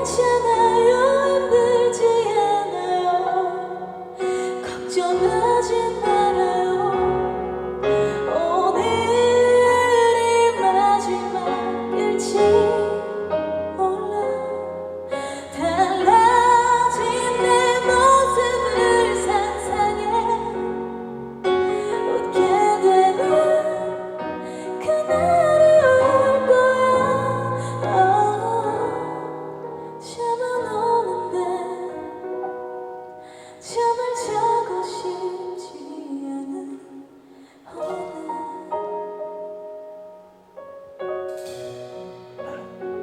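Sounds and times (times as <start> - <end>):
woman singing: 0.0 - 21.0, 21.6 - 32.4, 33.2 - 39.2
instrumental accompaniment: 37.8 - 43.0.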